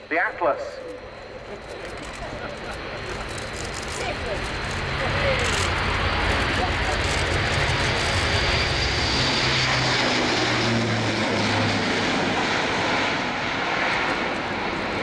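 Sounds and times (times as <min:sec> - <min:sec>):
turboprop aircraft engines droning: 0:00.0 - 0:15.0.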